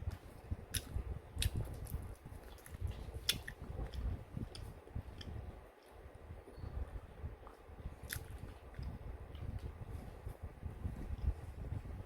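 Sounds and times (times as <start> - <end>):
soft chewing mouth sounds: 0.0 - 12.0
sharp mouth clicks: 8.0 - 9.0.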